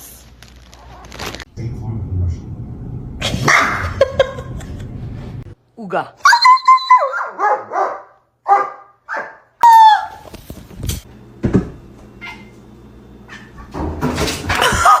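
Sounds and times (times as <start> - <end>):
low hum: 1.2 - 5.6.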